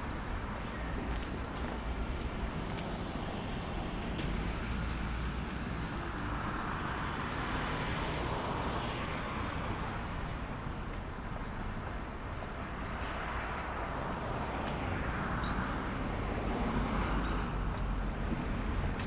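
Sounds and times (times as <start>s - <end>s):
road vehicle passing: 1.7s - 10.8s.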